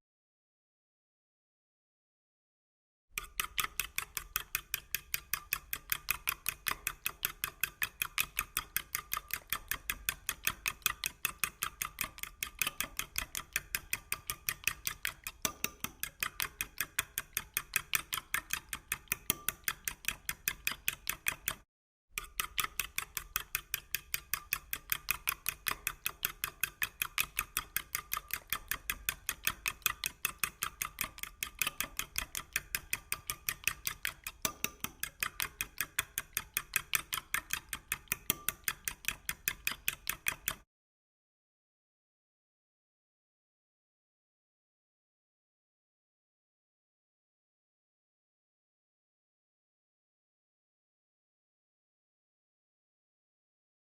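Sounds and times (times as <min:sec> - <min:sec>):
eggs beaten in a bowl: 0:03.2 - 0:21.6, 0:22.2 - 0:40.6.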